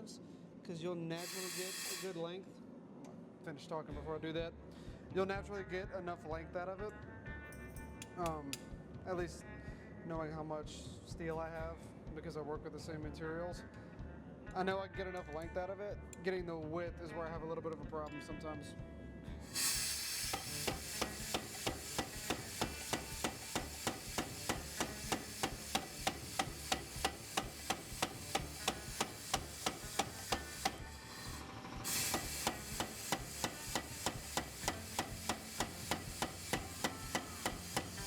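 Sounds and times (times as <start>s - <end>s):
hammer blows on hot steel: 1.2s - 2.3s, 19.4s - 38.0s
hiss: 1.2s - 2.3s, 19.4s - 38.0s.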